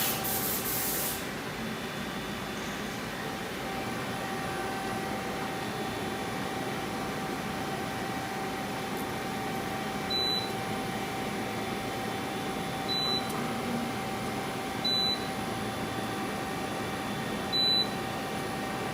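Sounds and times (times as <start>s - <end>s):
short high beeps: 12.9s - 13.3s.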